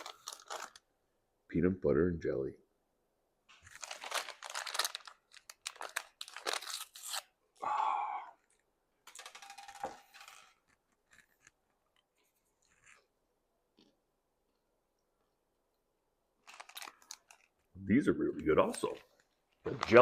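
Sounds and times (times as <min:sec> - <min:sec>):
plastic candy bag crinkling: 0:00.0 - 0:00.9, 0:03.5 - 0:07.3, 0:08.5 - 0:12.0, 0:16.4 - 0:17.8, 0:18.4 - 0:20.0.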